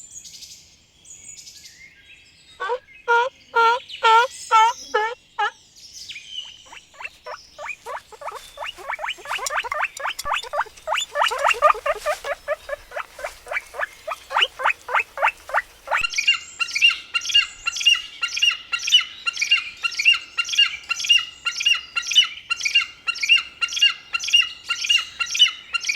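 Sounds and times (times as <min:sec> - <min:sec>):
short falling animal chirps: 0:02.6 - 0:05.5
higher animal squawks: 0:02.6 - 0:05.6, 0:06.5 - 0:16.2.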